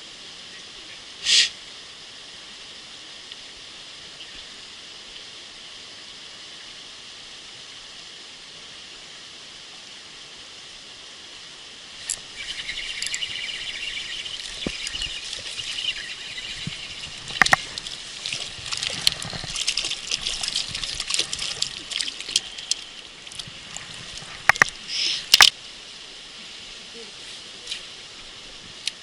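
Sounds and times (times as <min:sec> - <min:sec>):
water hissing: 0:01.2 - 0:01.6, 0:12.0 - 0:25.6
water splashing and trickling: 0:11.7 - 0:29.0
sharp clicks: 0:25.3 - 0:25.5.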